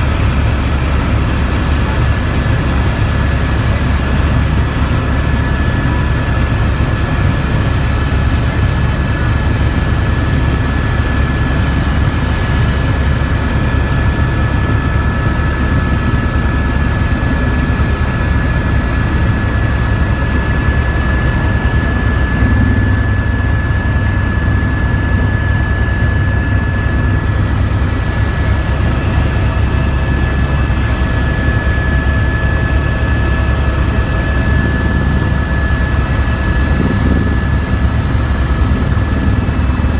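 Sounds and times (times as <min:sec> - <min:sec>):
helicopter drone and whine: 0:00.0 - 0:39.9.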